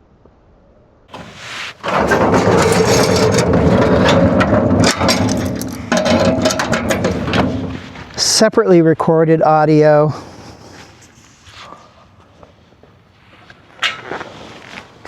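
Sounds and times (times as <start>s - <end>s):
clicks and knocks: 1.1s - 8.2s.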